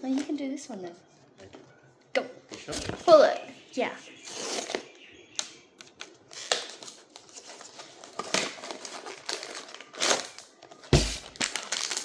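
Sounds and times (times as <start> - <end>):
plastic wrapping crinkling and tearing: 5.8 - 12.0.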